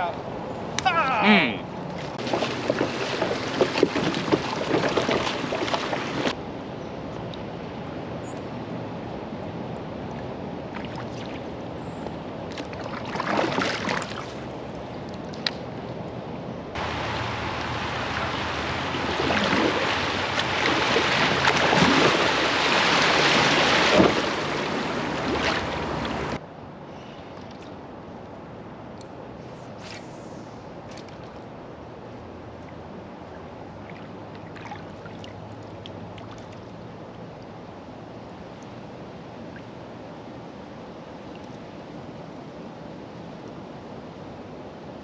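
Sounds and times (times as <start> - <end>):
creek water rushing and splashing: 0.3 - 6.4, 10.0 - 14.8, 16.7 - 26.4, 30.6 - 43.4
kayak swishes: 1.9 - 6.4, 16.8 - 26.4.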